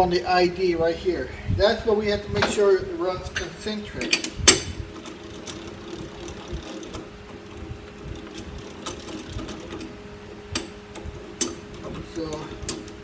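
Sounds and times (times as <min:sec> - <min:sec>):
metal lathe whirring: 0:03.2 - 0:13.0.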